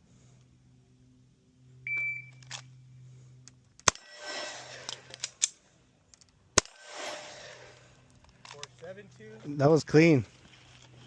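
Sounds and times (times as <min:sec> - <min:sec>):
shot timer beep: 0:01.9 - 0:02.4.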